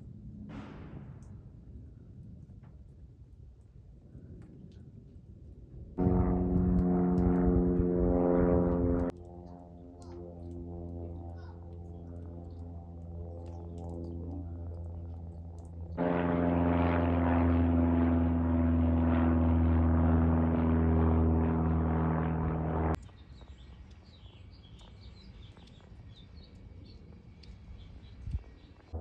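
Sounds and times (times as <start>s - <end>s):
propeller aircraft engine droning: 0.0s - 23.1s, 24.8s - 29.0s
faint birds chirping: 21.7s - 29.0s.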